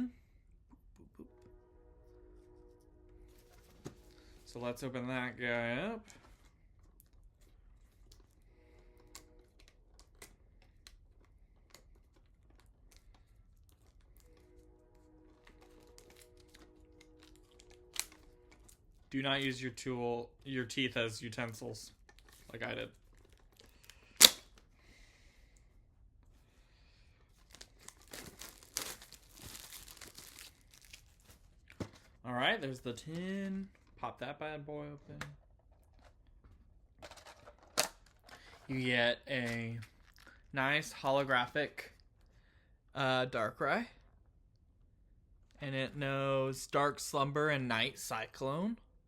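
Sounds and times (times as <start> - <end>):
sharp plastic crackle: 8.0 - 18.9, 22.0 - 24.7, 27.3 - 32.2
plastic wrap crinkling: 15.5 - 18.8, 27.3 - 32.1.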